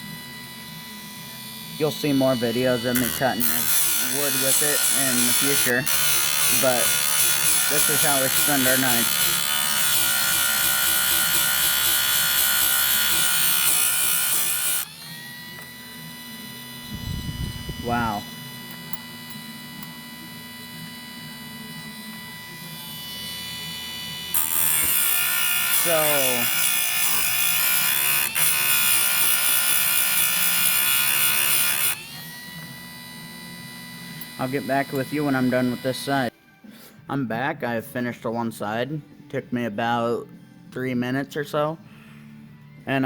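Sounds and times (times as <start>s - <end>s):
steady motor tone: 0.0s - 36.3s
chain sharpener grinding hiss: 1.8s - 15.7s, 24.3s - 32.3s.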